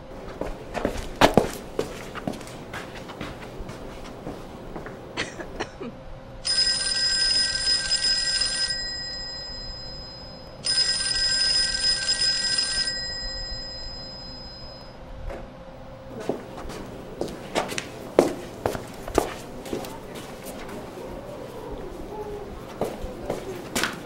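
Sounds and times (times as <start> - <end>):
telephone bell ringing: 6.4 - 15.0.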